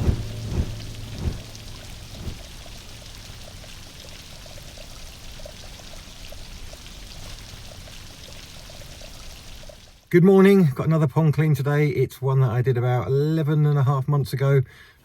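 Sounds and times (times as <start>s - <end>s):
running pouring water: 0.0s - 10.0s
water drips: 0.0s - 10.1s.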